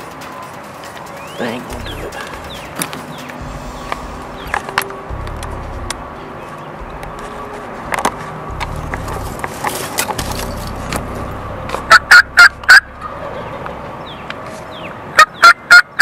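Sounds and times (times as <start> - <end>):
turkeys gobbling: 8.0 - 16.0.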